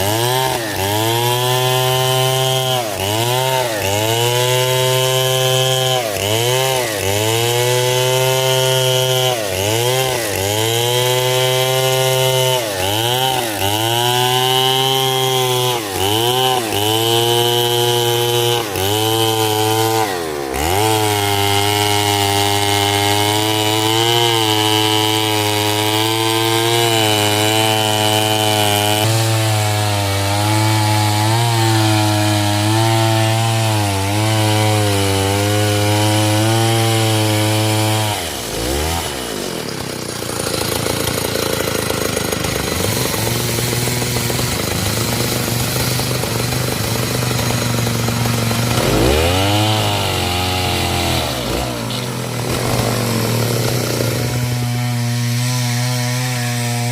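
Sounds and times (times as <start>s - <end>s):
chainsaw cutting wood: 0.0s - 56.9s.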